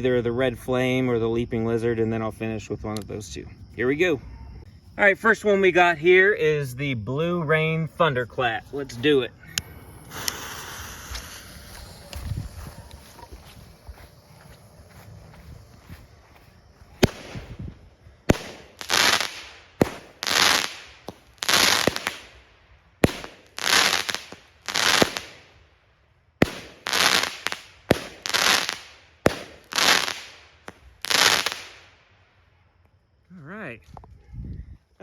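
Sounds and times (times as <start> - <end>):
firework crackling bursts: 9.4 - 15.9, 17.0 - 25.6, 26.4 - 32.1
firework launch pops: 9.5 - 13.7, 17.0 - 22.3, 23.0 - 25.5, 26.4 - 31.8.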